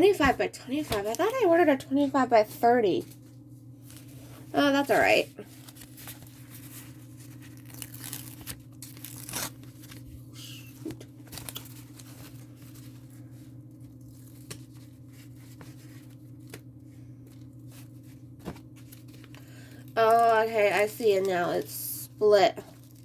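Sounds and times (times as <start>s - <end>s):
steady low hum: 0.0s - 23.0s
plastic film tearing and crinkling: 3.8s - 21.8s, 22.6s - 23.0s.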